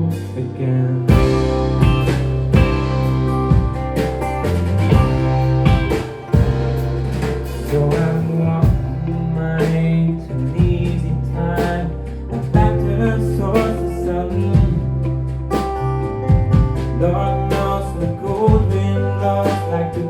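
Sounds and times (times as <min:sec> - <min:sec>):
person singing: 0:00.0 - 0:03.1, 0:07.5 - 0:15.7, 0:16.8 - 0:20.0
live band playing: 0:00.0 - 0:20.0.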